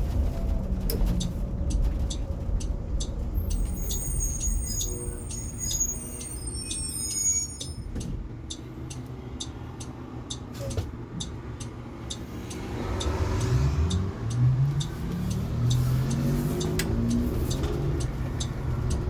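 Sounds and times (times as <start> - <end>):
bus cabin noise: 0.0 - 19.0
steady ticking: 1.0 - 19.0.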